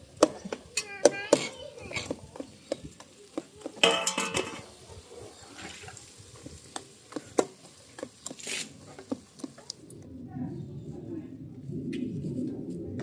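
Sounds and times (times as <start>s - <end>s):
dishes and utensils clattering: 3.8s - 4.8s.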